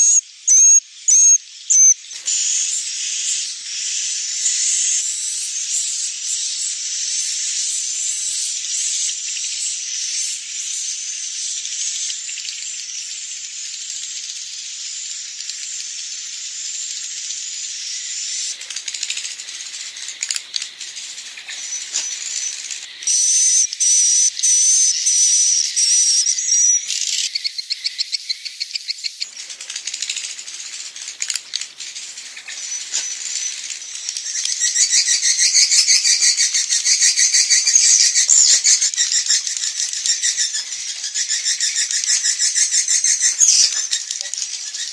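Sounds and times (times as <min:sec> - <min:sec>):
swiftlets twittering: 0:00.0 - 0:02.1, 0:22.4 - 0:26.8.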